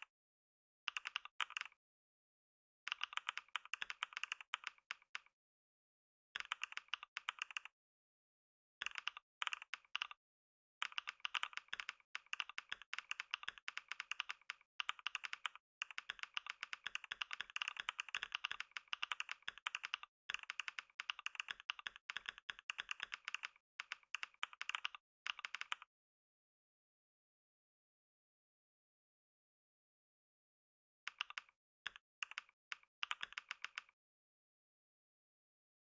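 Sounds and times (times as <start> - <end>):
fast typing on keyboard: 0.9 - 1.8, 2.9 - 5.3, 6.4 - 7.7, 8.8 - 10.2, 10.8 - 25.9, 31.1 - 34.0.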